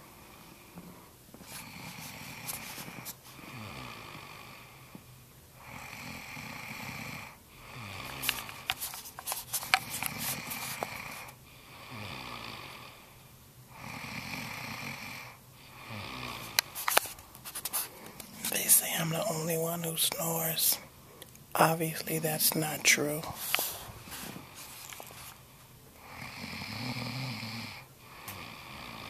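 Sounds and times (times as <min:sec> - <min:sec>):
woman snoring: 0:01.5 - 0:05.0, 0:05.6 - 0:08.8, 0:09.8 - 0:17.0, 0:26.0 - 0:29.0.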